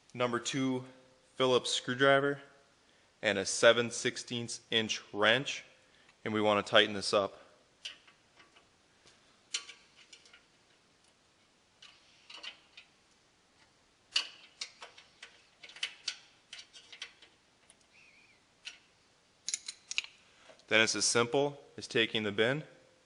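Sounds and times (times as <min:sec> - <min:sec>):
tools clicking on metal bolts: 0:07.8 - 0:08.7, 0:09.5 - 0:10.5, 0:11.8 - 0:12.9, 0:14.1 - 0:17.8, 0:18.6 - 0:20.2.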